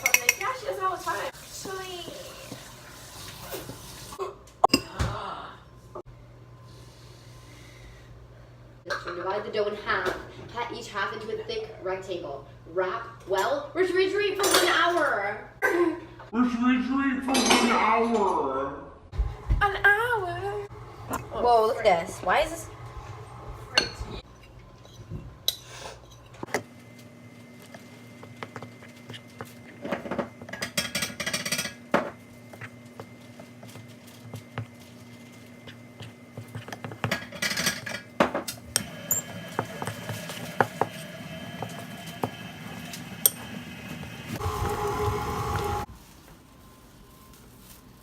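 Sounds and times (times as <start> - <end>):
dishes and utensils clinking: 0.0 - 0.8.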